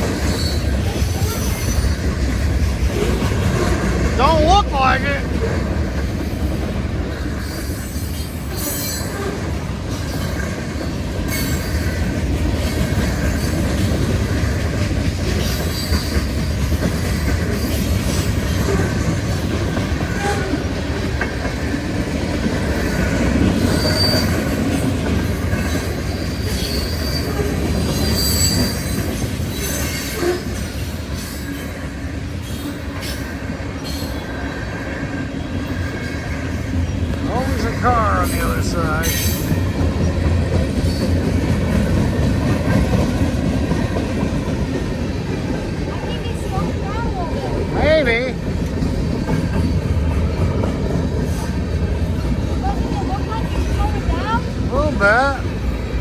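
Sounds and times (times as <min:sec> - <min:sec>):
freight train cars rolling: 0:00.0 - 0:56.0
high-pitched wheel squeals: 0:07.4 - 0:09.4, 0:23.6 - 0:24.4, 0:26.2 - 0:30.6.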